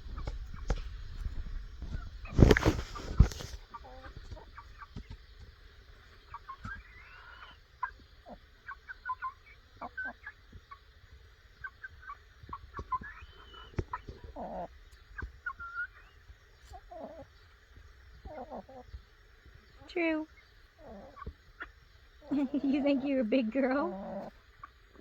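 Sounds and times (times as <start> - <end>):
chickens clucking and peeping: 0.0 - 25.0.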